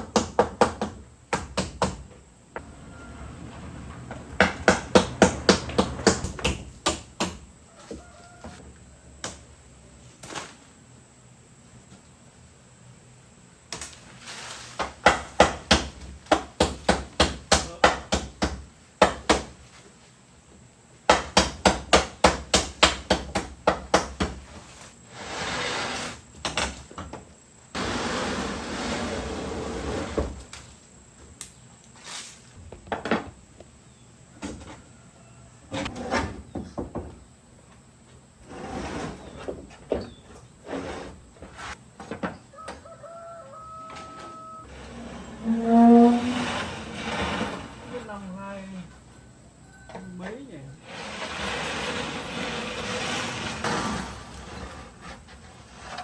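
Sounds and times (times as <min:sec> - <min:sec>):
steady scraping: 0:02.6 - 0:06.5, 0:44.7 - 0:48.3, 0:50.8 - 0:56.0
hammer blows: 0:02.6 - 0:07.4.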